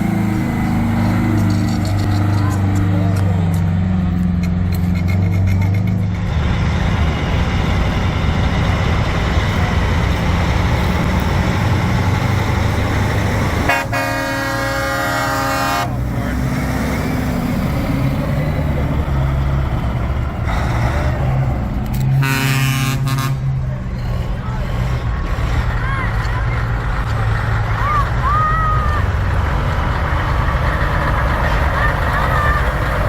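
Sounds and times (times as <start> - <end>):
diesel truck engine: 0.0 - 33.0
air horn blast: 13.6 - 16.0, 22.1 - 23.6.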